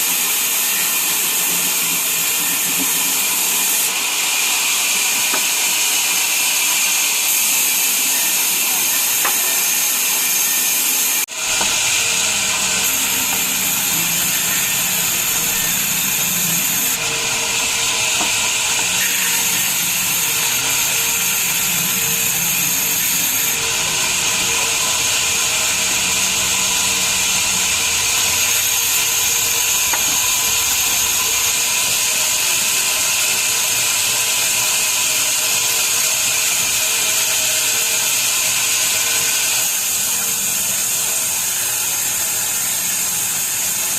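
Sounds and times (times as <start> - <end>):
saws cutting timber: 0.0 - 43.9.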